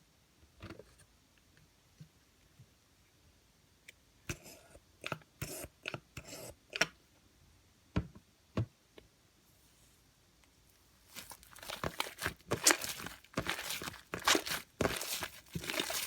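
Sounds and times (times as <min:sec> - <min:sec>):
slime squishing and popping: 0:11.1 - 0:16.0.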